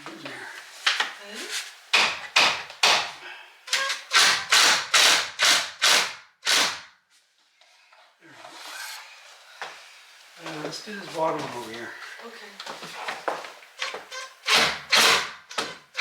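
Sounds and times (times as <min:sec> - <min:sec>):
hand tool scraping strokes: 0:08.4 - 0:09.9, 0:13.8 - 0:16.0.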